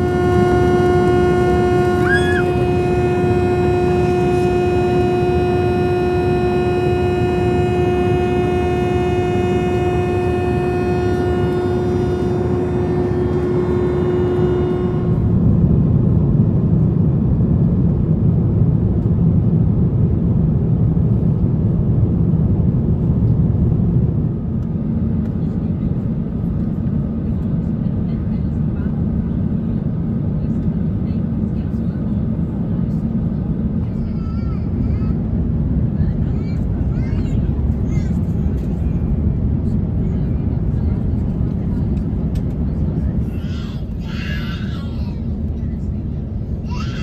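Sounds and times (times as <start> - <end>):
loud single-pitched drone: 0.0 - 16.0
engine and airflow rumble: 0.0 - 47.0.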